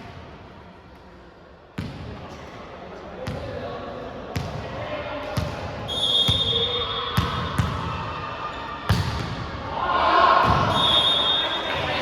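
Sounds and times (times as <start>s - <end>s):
players' voices: 9.5s - 12.0s.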